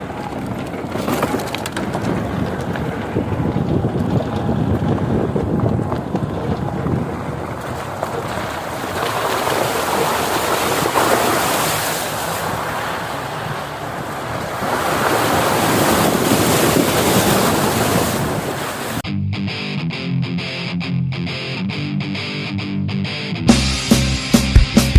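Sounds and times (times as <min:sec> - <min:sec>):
wind rushing over microphone: 0:00.0 - 0:19.0.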